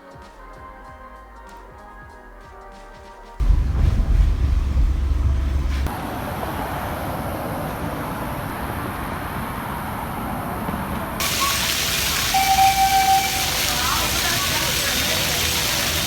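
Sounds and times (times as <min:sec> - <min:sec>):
heavy low rumble: 0:03.4 - 0:11.3
rushing vehicle noise: 0:03.4 - 0:16.0.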